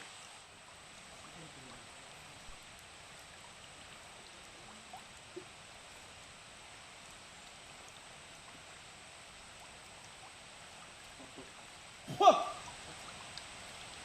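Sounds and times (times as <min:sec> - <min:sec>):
waterfall rushing: 0:12.0 - 0:13.0.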